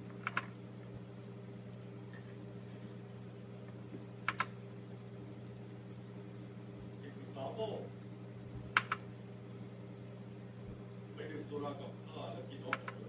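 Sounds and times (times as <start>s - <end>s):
low electrical hum: 0.0s - 13.0s
mechanical keyboard keystroke: 0.2s - 0.5s, 4.2s - 4.5s, 8.8s - 9.0s, 12.7s - 13.0s.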